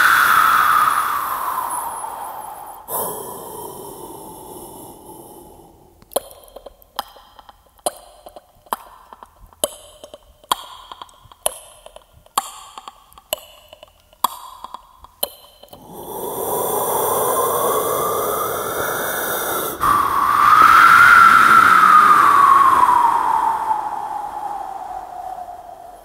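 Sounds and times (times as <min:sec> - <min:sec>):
vocal imitation of wind: 0:00.0 - 0:06.0, 0:15.8 - 0:26.0
mouth clicks imitating a clock: 0:06.0 - 0:15.8.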